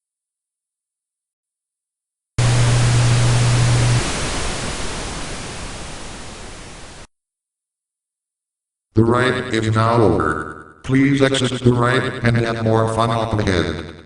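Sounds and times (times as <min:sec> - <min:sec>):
steady low hum: 0:02.4 - 0:07.0
burst of static noise: 0:02.4 - 0:07.1.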